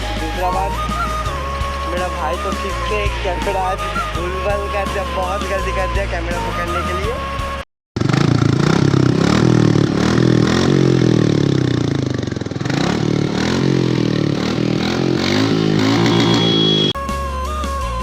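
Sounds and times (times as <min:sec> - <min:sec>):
motorcycle engine revving: 0:08.0 - 0:17.0.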